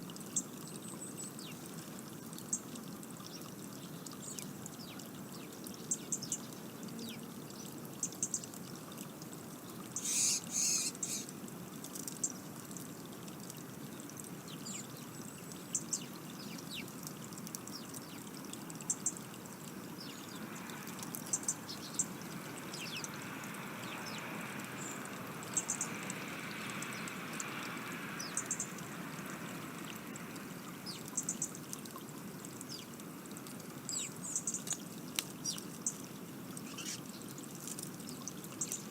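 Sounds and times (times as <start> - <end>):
trickling water rush: 0.0 - 38.9
small birds chirping: 10.0 - 11.3, 36.6 - 37.2.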